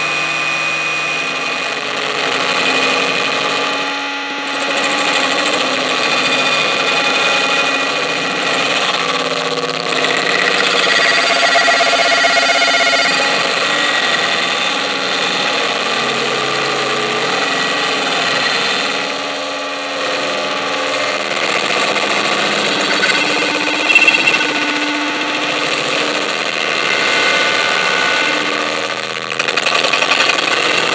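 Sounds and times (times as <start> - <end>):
harsh distorted noise music: 21.5 - 27.3.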